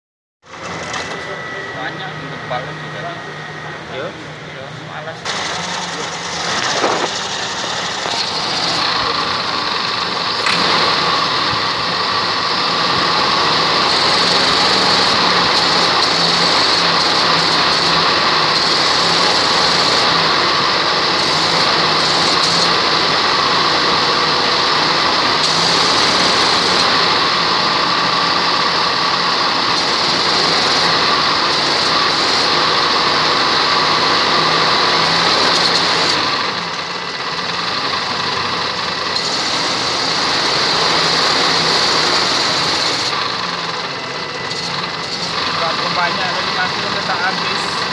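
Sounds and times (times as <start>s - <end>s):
air conditioning compressor grinding: 0.4s - 47.9s
car engine running: 0.4s - 47.9s.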